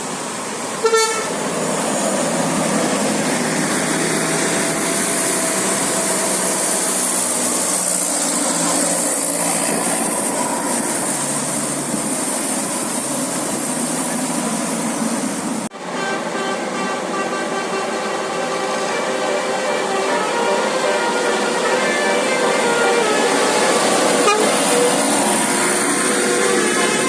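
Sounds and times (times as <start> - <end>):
road traffic engines hissing: 0.0 - 27.0.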